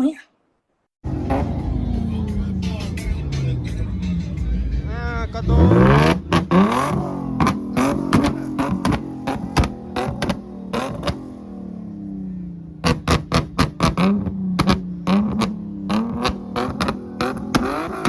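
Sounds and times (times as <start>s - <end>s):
car engine revving: 1.0s - 18.0s
exhaust pops and bangs: 5.8s - 11.4s, 12.8s - 18.0s.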